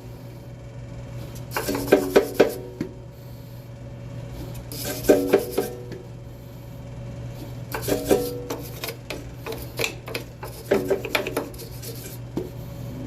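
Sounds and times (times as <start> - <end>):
wire brush scrubbing metal: 1.4 - 2.6, 4.6 - 6.0, 7.7 - 12.3.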